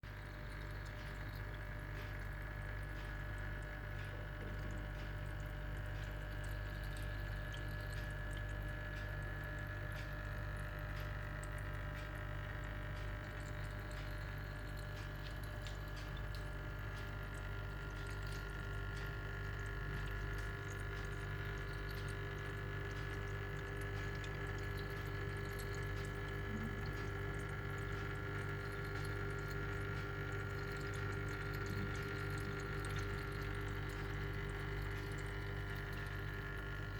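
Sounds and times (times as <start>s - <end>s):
water trickling and dripping: 0.0s - 36.9s
small water splashes: 13.0s - 36.9s
low hum: 26.4s - 34.1s.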